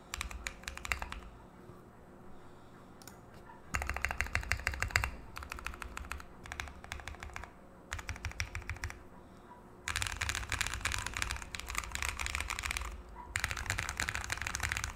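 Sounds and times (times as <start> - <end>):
mechanical keyboard typing: 0.0 - 1.3, 3.7 - 9.0, 9.9 - 14.9.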